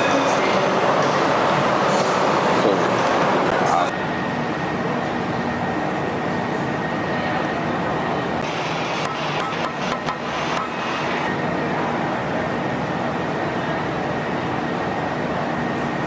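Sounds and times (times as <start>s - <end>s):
machinery noise with whine: 0.0s - 16.0s.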